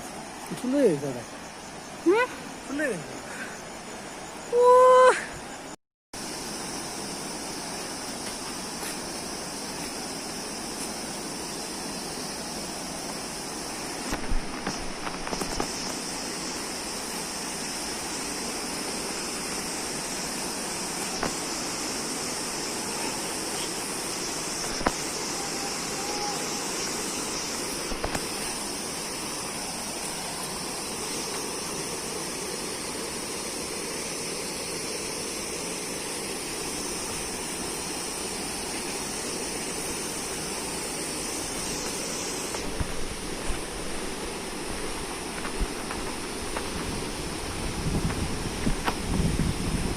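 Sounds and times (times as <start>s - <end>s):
waterfall rushing: 12.5s - 48.7s.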